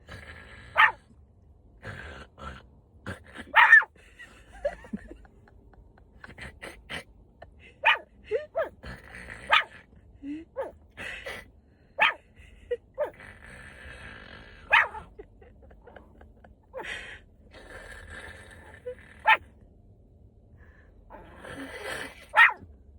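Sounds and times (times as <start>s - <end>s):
dog snoring: 0.0s - 1.0s, 1.8s - 3.6s, 8.8s - 9.9s, 13.1s - 15.0s, 17.5s - 19.4s, 21.2s - 22.4s.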